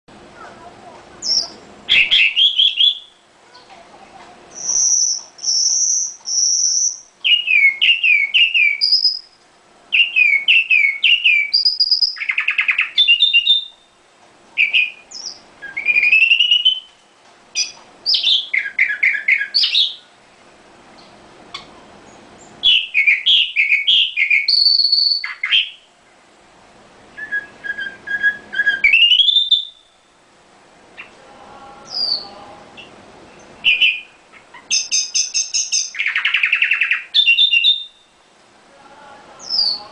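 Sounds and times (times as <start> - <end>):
nightingale singing: 1.2 - 3.2, 4.5 - 14.0, 14.6 - 17.0, 17.6 - 20.1, 21.0 - 25.9, 27.1 - 30.2, 30.9 - 31.2, 31.8 - 38.2, 39.4 - 39.9.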